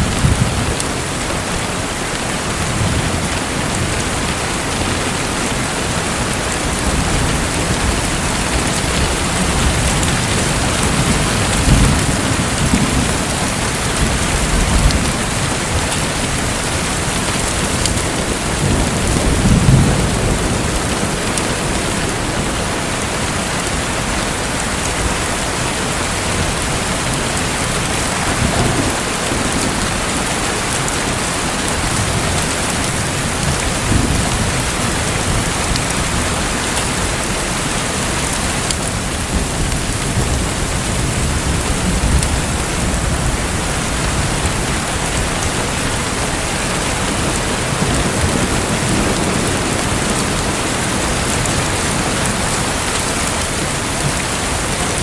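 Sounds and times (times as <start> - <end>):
dense water noise: 0.0 - 55.0
deep rumbles: 27.4 - 32.2.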